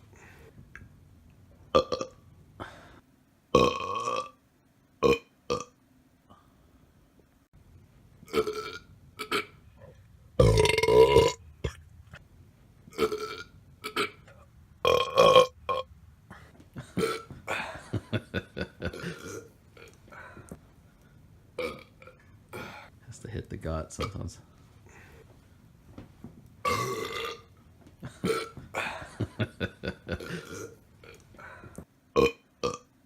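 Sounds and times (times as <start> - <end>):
person burping: 1.8 - 2.8, 3.5 - 4.4, 5.0 - 5.8, 8.3 - 11.8, 12.9 - 15.9, 16.8 - 20.3, 21.6 - 22.9, 26.6 - 32.9.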